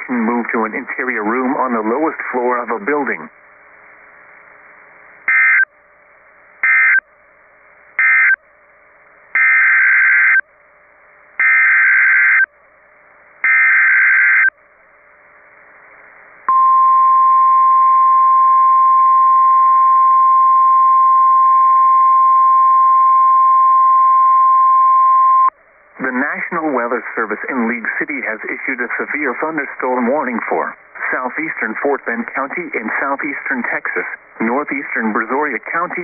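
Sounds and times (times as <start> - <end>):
radio hiss: 0.0 - 5.7, 25.9 - 36.0
screeching data bursts: 5.3 - 5.7, 8.0 - 8.4, 9.4 - 10.4, 11.4 - 12.5, 13.4 - 14.5.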